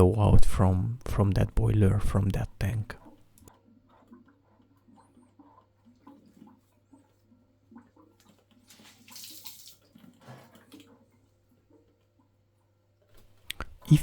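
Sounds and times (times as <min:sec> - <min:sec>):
water trickling and gurgling: 0:03.0 - 0:13.0.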